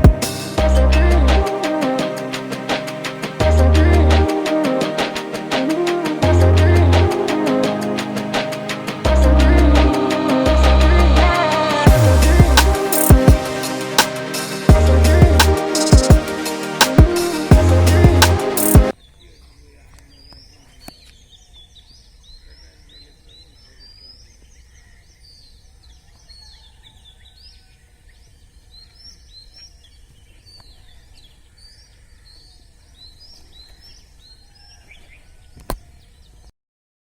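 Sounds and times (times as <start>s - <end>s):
small birds chirping: 18.6s - 36.5s.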